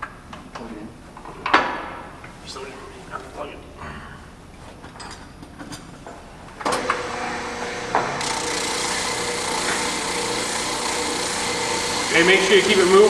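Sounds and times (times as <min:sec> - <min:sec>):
spindle sander humming: 0:06.7 - 0:13.0
wood sanding hiss: 0:08.2 - 0:13.0.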